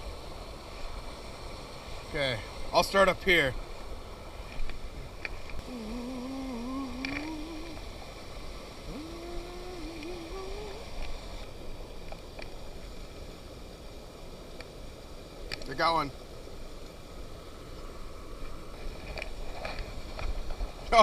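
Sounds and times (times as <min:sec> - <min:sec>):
person humming: 0:05.6 - 0:08.1, 0:08.8 - 0:11.2
faint clicks: 0:07.0 - 0:07.8.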